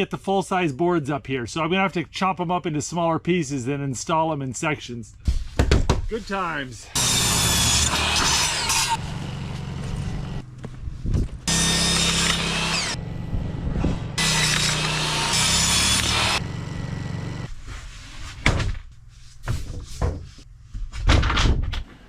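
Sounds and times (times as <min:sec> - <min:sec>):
power saw cutting wood: 0:06.9 - 0:10.4, 0:11.5 - 0:17.5.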